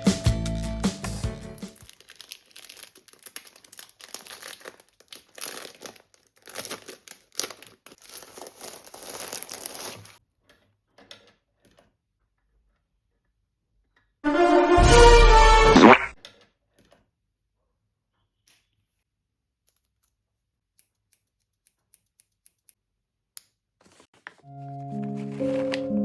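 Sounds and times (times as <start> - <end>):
crinkly material rustling: 1.7 - 10.2, 23.8 - 26.0.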